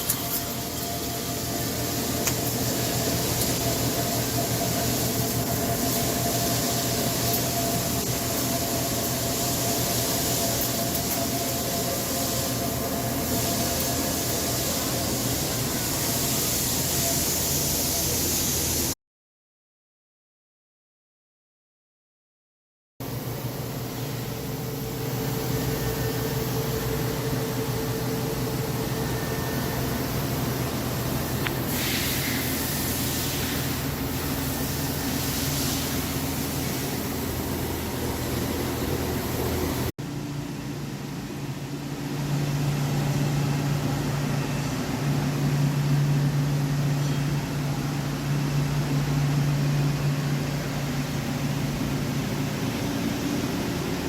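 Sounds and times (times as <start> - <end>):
lathe machine hum: 0.0 - 18.8.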